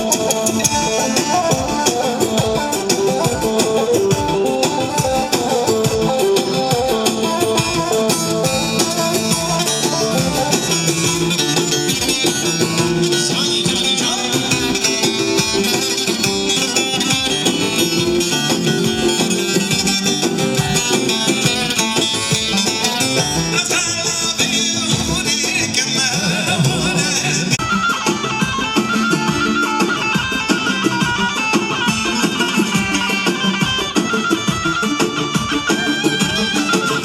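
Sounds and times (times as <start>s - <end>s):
dance music with plucked strings: 0.0s - 37.0s.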